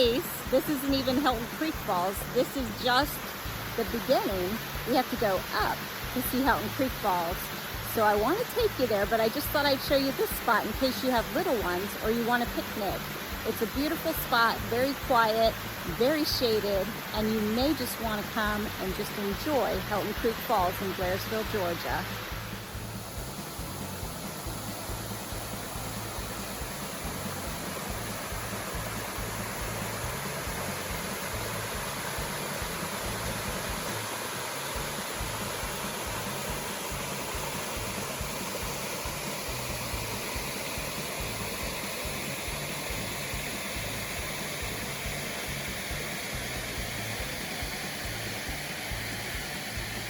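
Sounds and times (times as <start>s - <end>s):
water spilling over small waterfall: 0.2s - 50.0s.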